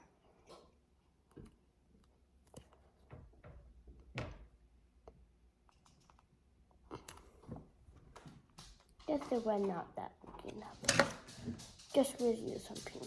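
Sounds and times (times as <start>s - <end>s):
small objects knocking and clicking: 10.3s - 11.9s.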